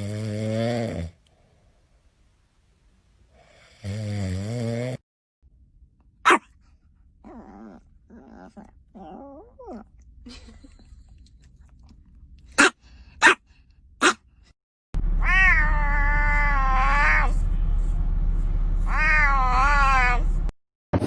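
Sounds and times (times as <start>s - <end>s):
cat meowing: 15.2s - 17.4s, 18.9s - 20.3s.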